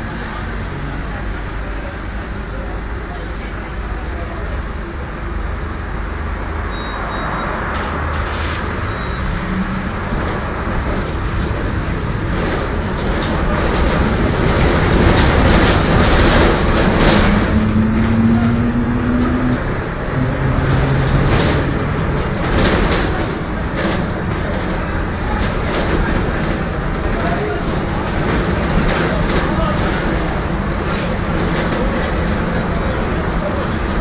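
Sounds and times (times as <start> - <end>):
bus engine running: 0.0 - 34.0
body rattles and clicks: 10.2 - 33.9
differential growl: 16.3 - 23.4.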